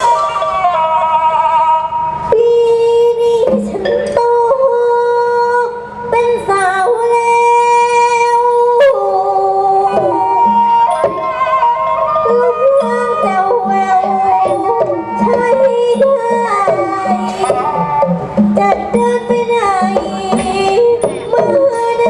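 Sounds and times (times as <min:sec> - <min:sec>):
theatre music with singing: 0:00.0 - 0:22.0.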